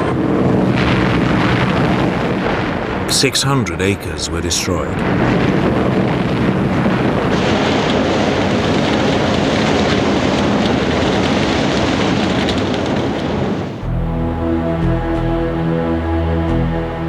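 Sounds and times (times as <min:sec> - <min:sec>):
loud rumbling roar: 0:04.8 - 0:14.6.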